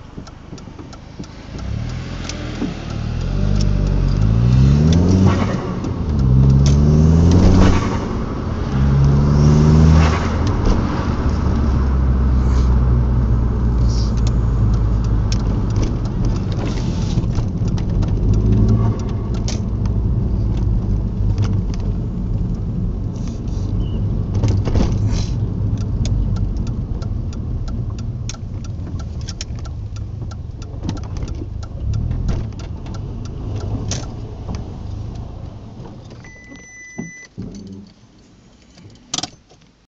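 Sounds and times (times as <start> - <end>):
car engine revving and idling: 0.0 - 36.6.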